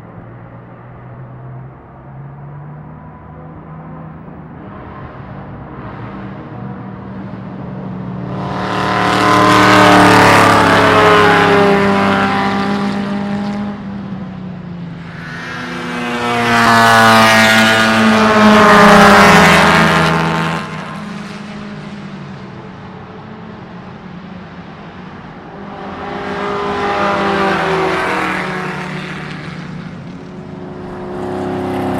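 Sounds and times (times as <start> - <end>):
distant engine drone: 0.0 - 31.9
race cars passing at speed: 0.0 - 31.9.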